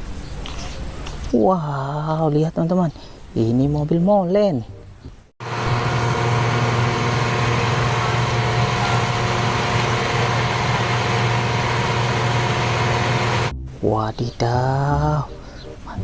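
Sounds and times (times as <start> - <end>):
heavy truck engine humming: 5.4 - 13.5.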